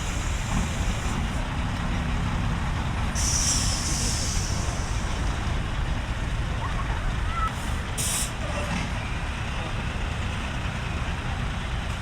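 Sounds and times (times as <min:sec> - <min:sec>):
truck engine idling: 0:00.0 - 0:08.6.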